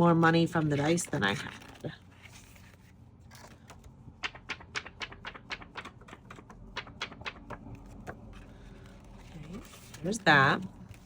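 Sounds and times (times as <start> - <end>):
paper money being counted: 3.4 - 10.8.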